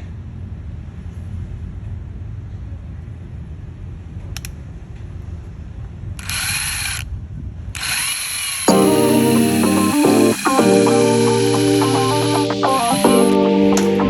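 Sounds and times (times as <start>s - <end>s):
click: 4.4s - 4.6s
small motor running: 6.2s - 7.0s, 7.8s - 12.4s
short bursts of high hiss: 8.5s - 13.4s.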